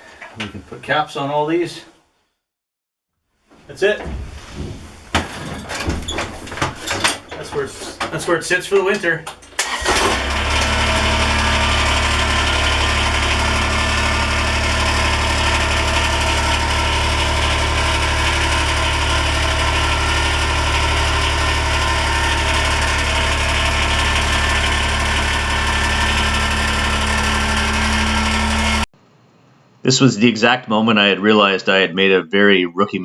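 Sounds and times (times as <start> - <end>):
tractor diesel engine running: 3.7 - 28.9.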